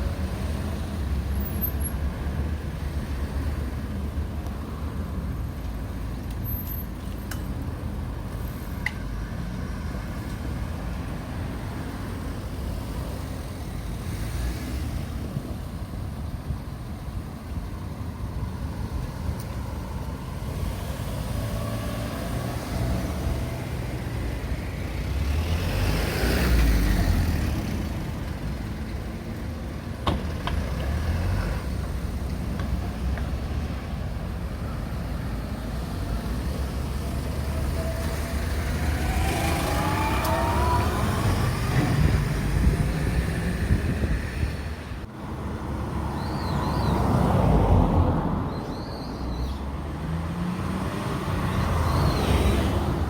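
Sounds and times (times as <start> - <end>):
cars and trucks driving past: 0.0 - 53.0
vehicle engine pulling away: 17.8 - 44.9.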